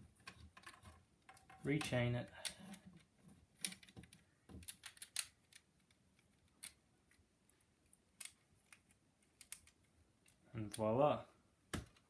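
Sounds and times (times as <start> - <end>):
plastic pieces clicking: 0.2 - 7.2, 7.9 - 10.8.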